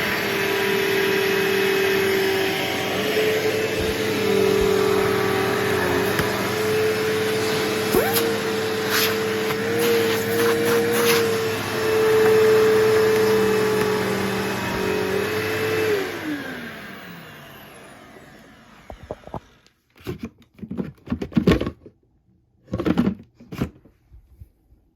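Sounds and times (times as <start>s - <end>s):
vacuum cleaner running: 0.0s - 19.7s
knocks and rattles of handling: 19.0s - 24.1s.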